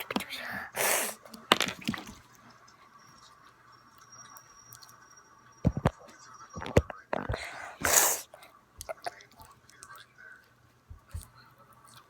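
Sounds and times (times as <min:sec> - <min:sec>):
slime squelching: 0:06.6 - 0:09.2.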